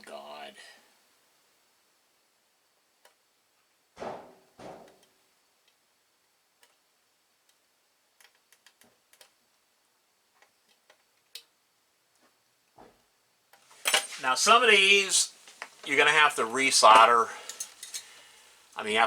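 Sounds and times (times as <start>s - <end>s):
hand tools clicking on circuit board: 8.2s - 9.4s.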